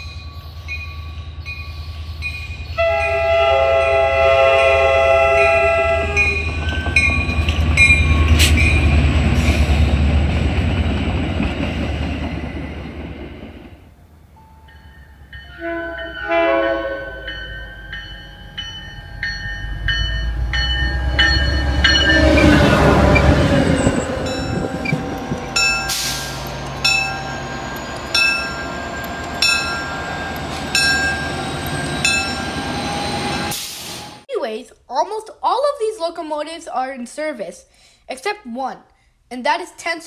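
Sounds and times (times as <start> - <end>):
locomotive bell ringing: 0.0 - 9.5, 14.4 - 34.2
train rumble: 0.0 - 34.3
locomotive air horn blasts: 2.8 - 6.5, 15.5 - 17.3.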